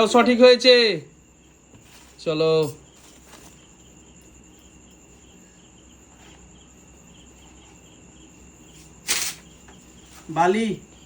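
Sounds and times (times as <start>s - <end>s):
faint insect chirping: 0.0s - 11.0s.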